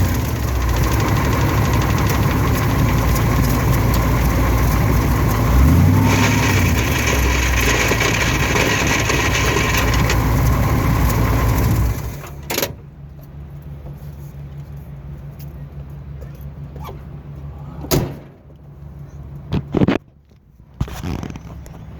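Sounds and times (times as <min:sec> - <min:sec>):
transmission grinding: 0:00.0 - 0:12.6
vehicle engine running: 0:00.0 - 0:17.8.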